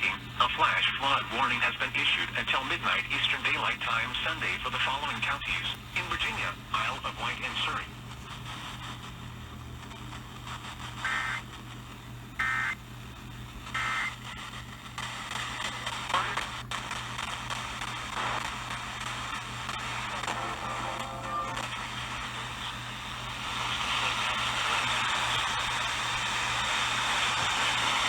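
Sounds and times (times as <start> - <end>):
radio hiss and hum: 0.0 - 28.0
buzzy digital data tones: 11.0 - 11.5, 12.4 - 12.8, 13.7 - 14.8.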